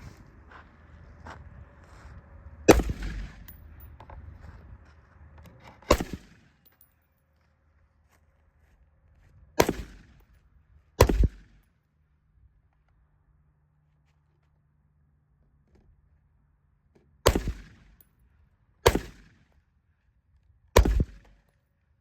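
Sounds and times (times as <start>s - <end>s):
pistol shots with echo: 2.7s - 3.5s, 9.6s - 10.0s, 11.0s - 11.5s, 17.3s - 17.9s, 18.8s - 19.3s, 20.8s - 21.3s.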